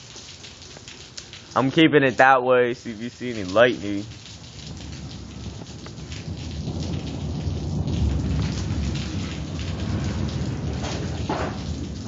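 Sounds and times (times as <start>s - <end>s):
steady rain: 0.0s - 12.0s
thunder rumbling: 3.4s - 12.0s.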